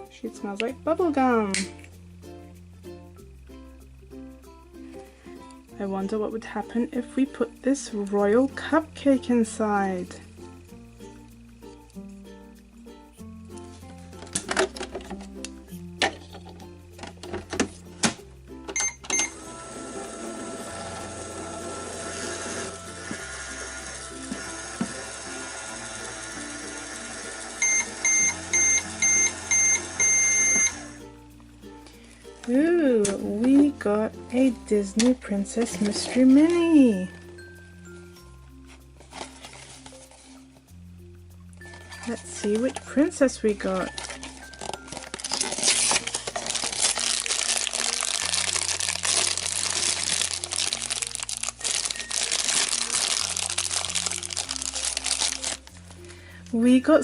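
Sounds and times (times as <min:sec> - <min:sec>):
background music: 0:00.0 - 0:57.0
toy microwave beeping: 0:18.7 - 0:31.0
plastic packaging torn and crumpled: 0:43.8 - 0:55.9.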